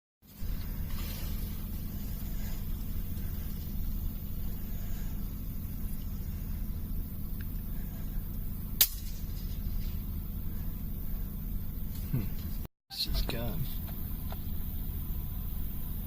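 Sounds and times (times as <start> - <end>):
steady low rumble: 0.2 - 16.0
suppressed rifle shot: 8.7 - 10.1.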